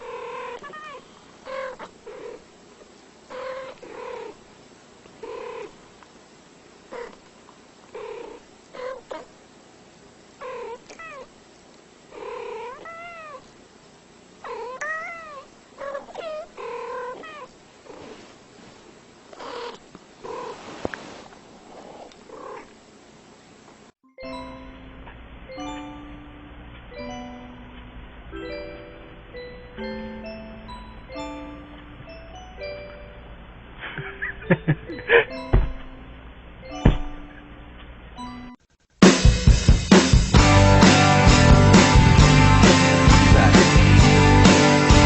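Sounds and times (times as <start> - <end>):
cat meowing: 0.4 - 2.4, 8.1 - 9.3, 10.4 - 11.3, 12.5 - 13.5, 14.4 - 17.5.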